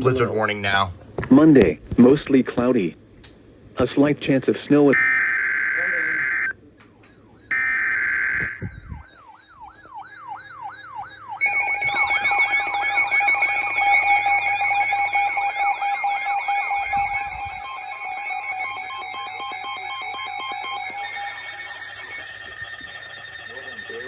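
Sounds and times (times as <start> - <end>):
buzzing data tone: 4.9 - 6.6, 10.7 - 24.0
warbling alarm siren: 4.9 - 24.0
steady alert tones: 5.0 - 24.0.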